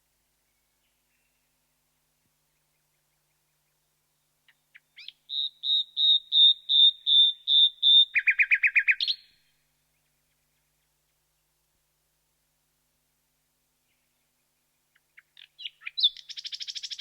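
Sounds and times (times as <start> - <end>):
nightingale singing: 2.5 - 11.2, 13.9 - 17.0.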